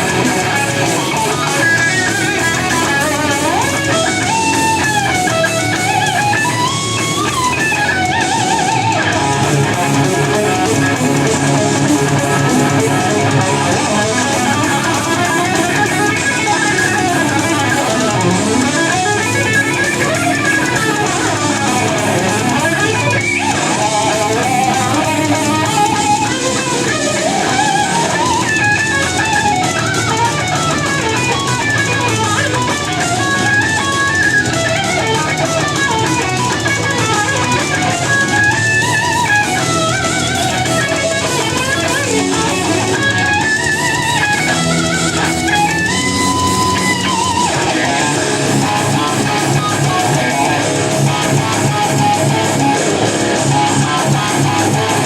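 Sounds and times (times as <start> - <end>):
electric guitar lead lines: 0.0 - 55.0
heavy metal bass accompaniment: 0.0 - 55.0.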